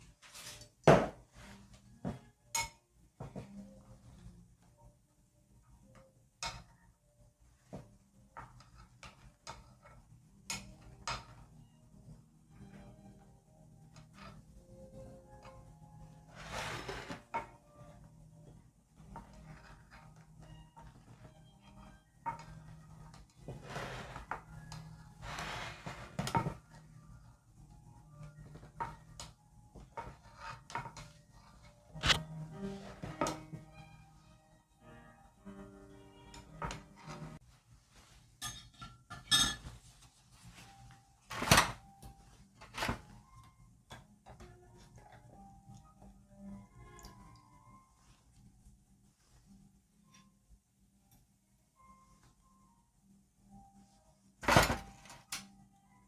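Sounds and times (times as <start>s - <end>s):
utensil scraping dish: 16.3s - 17.5s, 23.5s - 24.5s, 25.2s - 26.6s
utensils clinking against dish: 38.4s - 39.8s.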